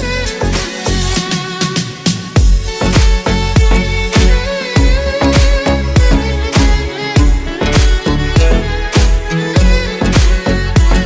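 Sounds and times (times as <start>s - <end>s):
sustained string-like melody: 0.0s - 11.0s
deep booming drum: 2.3s - 11.0s.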